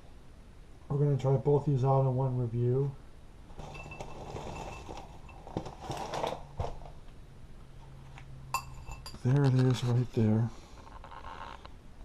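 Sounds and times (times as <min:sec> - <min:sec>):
packaging rustling: 0:03.5 - 0:07.0.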